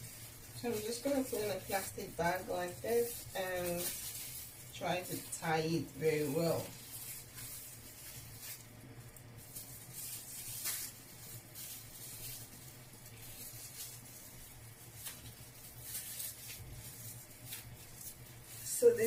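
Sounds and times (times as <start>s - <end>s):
plastic bag rustling: 0.0s - 19.0s
steady low hum: 0.0s - 19.0s.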